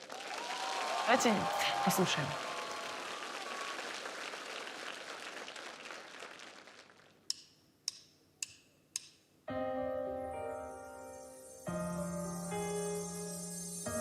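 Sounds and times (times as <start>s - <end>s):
audience applause: 0.0s - 7.2s.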